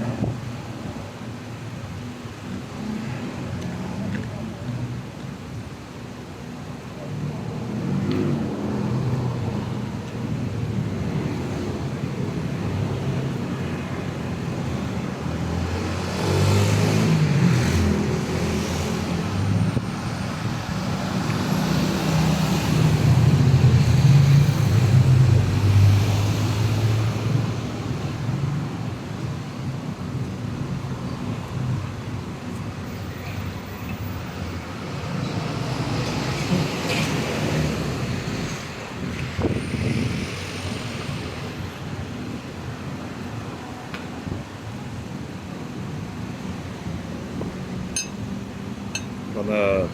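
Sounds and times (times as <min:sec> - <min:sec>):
road traffic rumble: 0:00.0 - 0:49.9
loud vehicle passing: 0:10.9 - 0:28.6.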